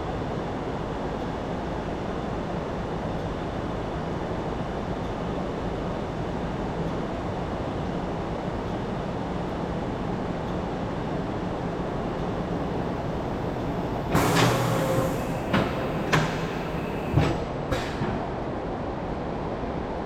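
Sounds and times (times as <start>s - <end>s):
vehicle lift rumble and hum: 11.2s - 17.4s.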